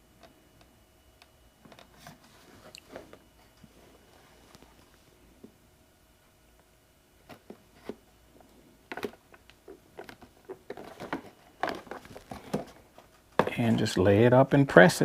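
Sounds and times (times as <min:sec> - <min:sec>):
plastic parts clicking and crinkling: 0:08.9 - 0:13.6.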